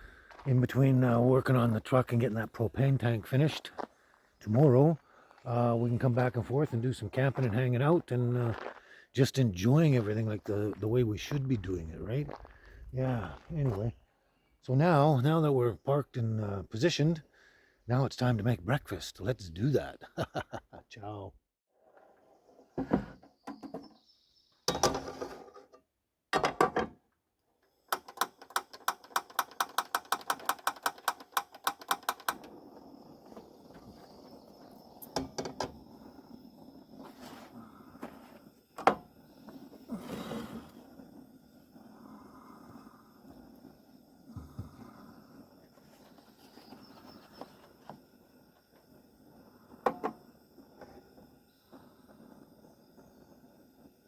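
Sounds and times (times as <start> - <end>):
burner hissing: 31.6 - 54.0.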